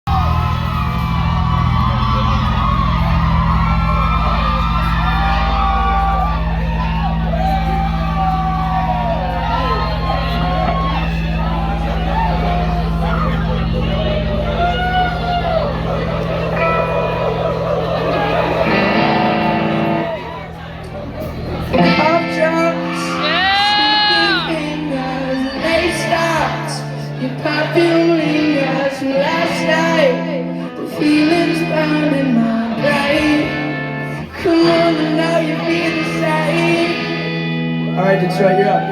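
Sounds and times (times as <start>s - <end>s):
crowd whooping and cheering: 0.0s - 38.9s
live band with heavy bass: 0.1s - 38.9s
person singing high vocal line: 21.8s - 37.3s.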